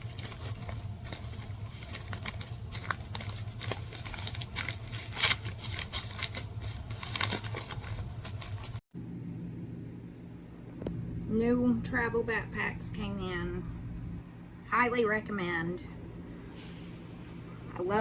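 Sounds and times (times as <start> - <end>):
packaging and fabric crinkling: 0.0 - 8.8
packaging crackles: 0.0 - 8.8
low hum: 6.9 - 18.0.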